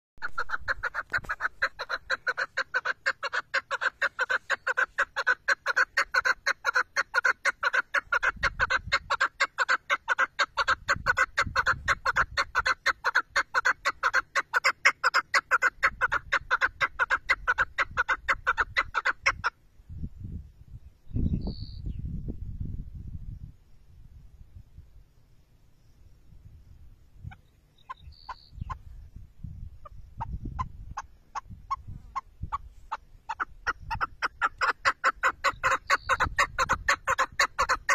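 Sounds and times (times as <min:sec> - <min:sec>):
partridge calling: 0:00.2 - 0:19.6, 0:21.1 - 0:22.1, 0:27.2 - 0:37.9.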